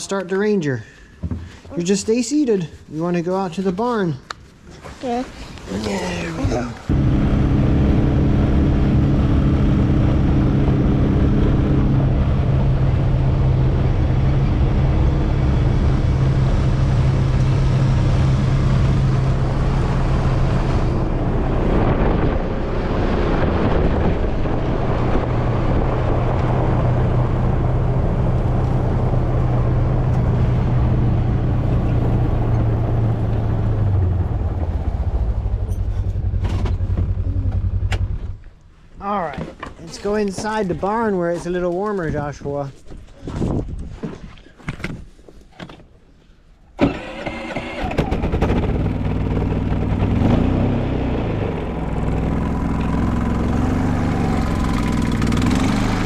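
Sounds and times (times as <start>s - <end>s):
utility vehicle engine driving: 5.6s - 38.7s, 46.8s - 56.0s.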